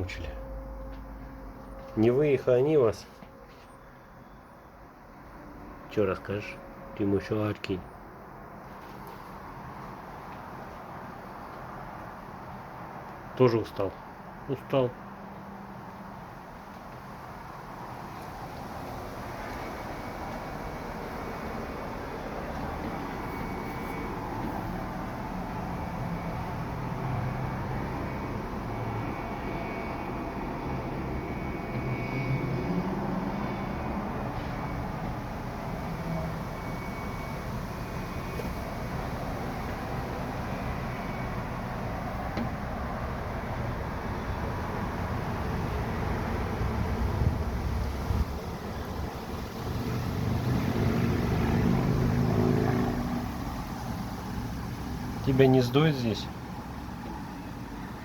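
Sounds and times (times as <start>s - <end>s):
engine passing by: 17.5s - 58.0s
wind rumbling on microphone: 43.8s - 50.6s
wind on microphone: 46.6s - 49.8s.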